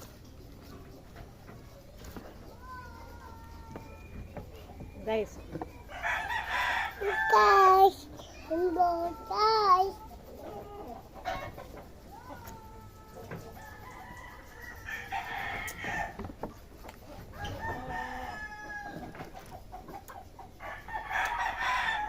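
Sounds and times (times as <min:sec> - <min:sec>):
rooster crowing: 0:05.9 - 0:07.9, 0:10.5 - 0:16.3, 0:17.2 - 0:19.3, 0:20.6 - 0:22.0.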